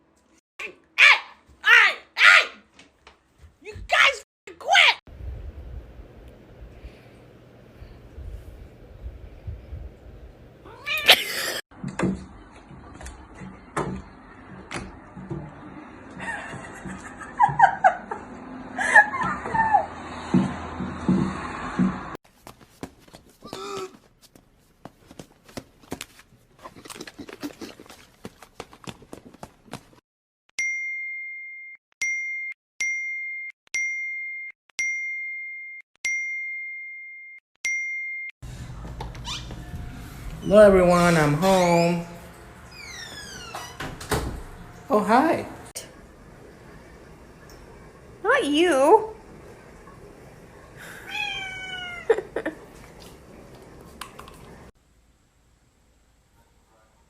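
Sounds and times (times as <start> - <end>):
cat yowling: 10.7 - 11.6, 51.0 - 52.2
cat short sharp cries: 51.0 - 52.1.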